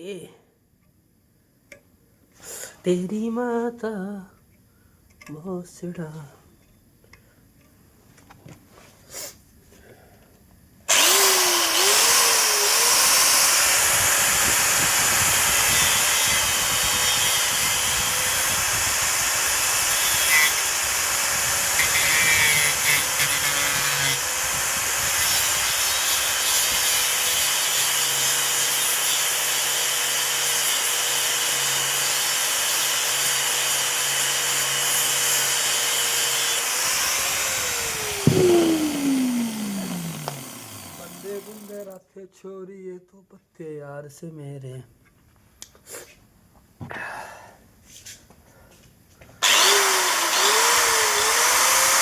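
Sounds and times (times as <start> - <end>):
angle grinder cutting acrylic: 10.9 - 42.0, 49.4 - 52.0.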